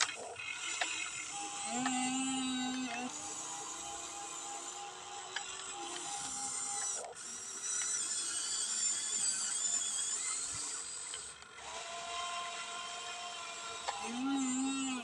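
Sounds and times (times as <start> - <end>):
toy electric motors whining: 0.0 - 15.0.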